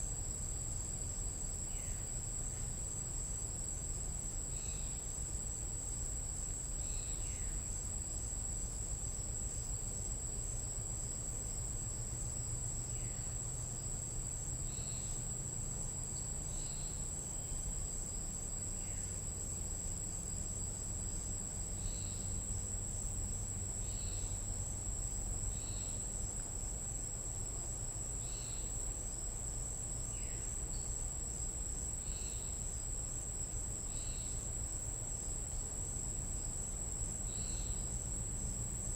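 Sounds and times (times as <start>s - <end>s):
insects high-pitched drone: 0.0s - 38.9s.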